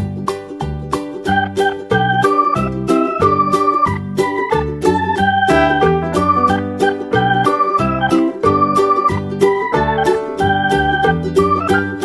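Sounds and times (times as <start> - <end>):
keyboard chords over steady beat: 5.4 - 8.0.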